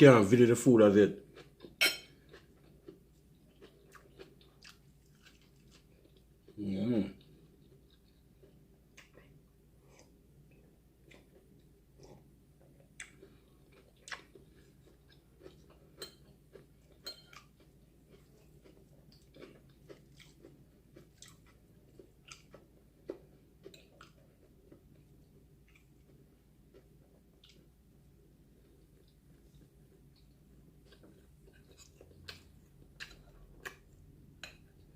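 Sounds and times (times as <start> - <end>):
person chewing food: 1.2 - 34.9.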